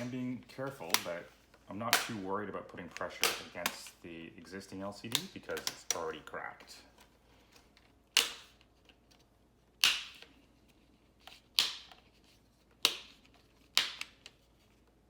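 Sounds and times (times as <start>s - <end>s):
plastic clips snapping loose: 8.1s - 8.6s.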